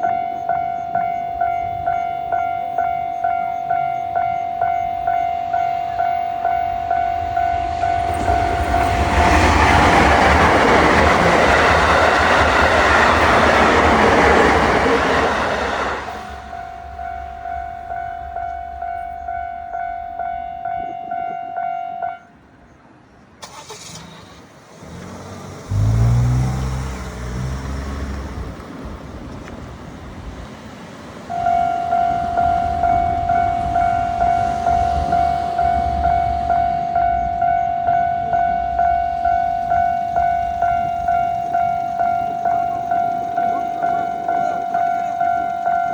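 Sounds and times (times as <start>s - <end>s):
level crossing alarm bell: 0.0s - 22.4s, 31.3s - 45.9s
train passing with rushing rumble: 0.0s - 45.9s
vehicle engine: 23.4s - 31.3s.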